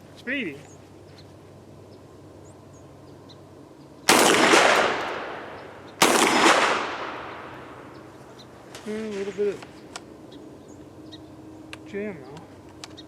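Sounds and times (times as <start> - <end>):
shotgun action cycling: 4.1 - 7.6
shotgun shots echoing: 4.1 - 7.9.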